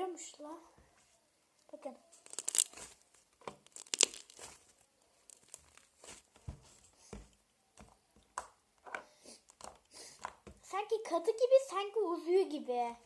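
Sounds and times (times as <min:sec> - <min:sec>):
slime crackling and popping: 0:02.1 - 0:06.3.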